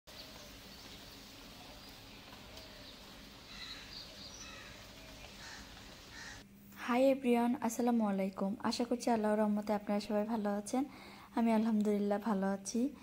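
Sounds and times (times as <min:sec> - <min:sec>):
distant bird calls: 0:00.1 - 0:06.5.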